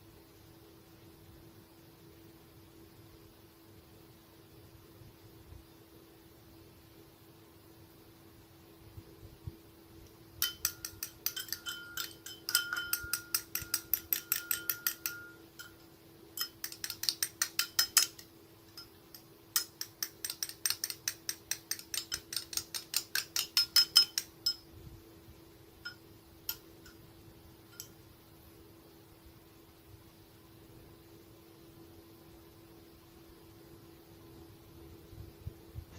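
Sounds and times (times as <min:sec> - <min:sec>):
spoon clinking against glass bowl: 0:10.4 - 0:24.7, 0:25.8 - 0:27.0, 0:27.7 - 0:28.0.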